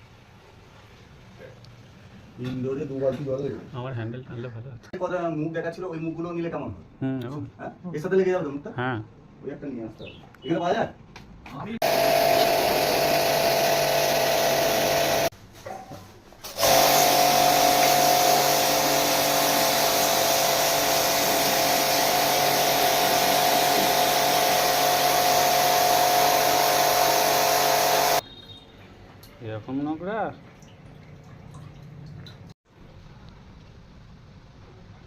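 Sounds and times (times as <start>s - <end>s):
pump washer whine and hiss: 11.8s - 15.3s, 16.4s - 28.2s.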